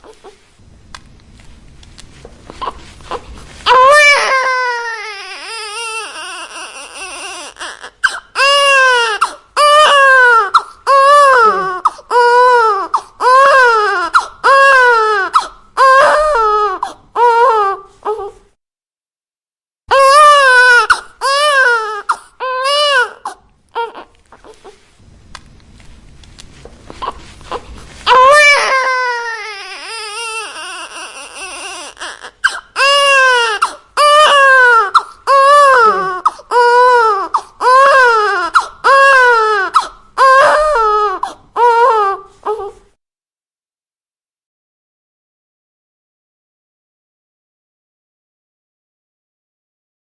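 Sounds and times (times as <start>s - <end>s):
baby whimpering: 0.0s - 0.5s, 2.5s - 18.5s, 19.9s - 24.9s, 26.9s - 42.9s
baby crying: 2.5s - 18.4s, 19.9s - 24.8s, 26.9s - 42.8s.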